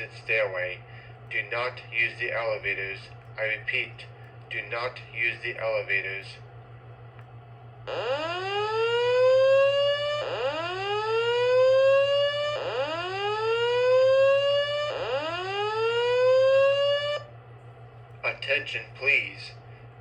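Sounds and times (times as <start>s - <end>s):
fire alarm whoop tone: 7.9s - 17.3s.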